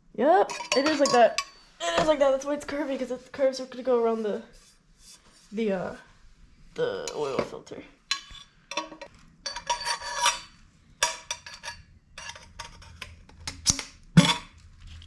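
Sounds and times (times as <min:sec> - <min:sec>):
metal pipes clinking: 0:00.5 - 0:01.6, 0:08.1 - 0:14.5.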